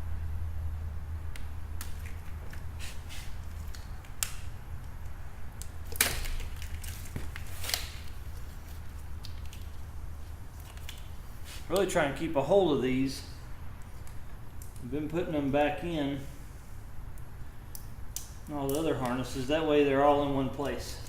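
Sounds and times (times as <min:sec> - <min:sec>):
low hum: 0:00.0 - 0:02.8.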